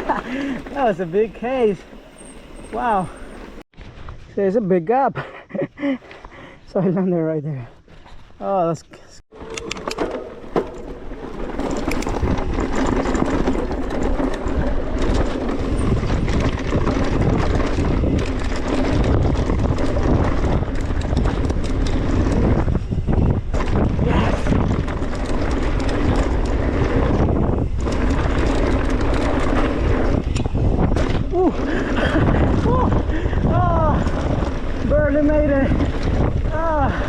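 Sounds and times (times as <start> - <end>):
bike rattling over bumps: 0.0 - 3.6, 9.3 - 37.0
tyres rolling over dirt: 9.3 - 37.0
wind buffeting microphone: 10.4 - 37.0.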